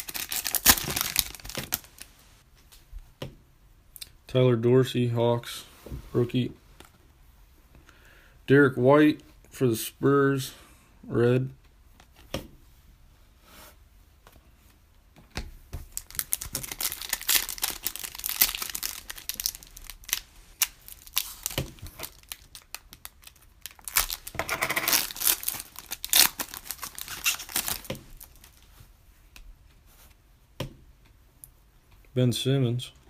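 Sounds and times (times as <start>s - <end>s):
wrapper tearing and crinkling: 0.0s - 2.1s, 15.9s - 28.6s.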